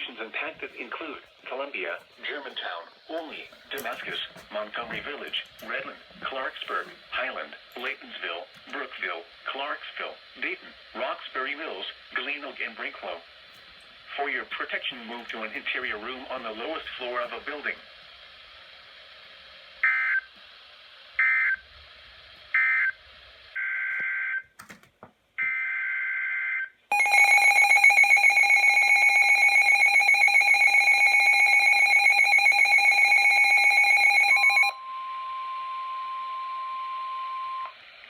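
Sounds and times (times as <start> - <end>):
radio hiss: 0.0 - 23.6.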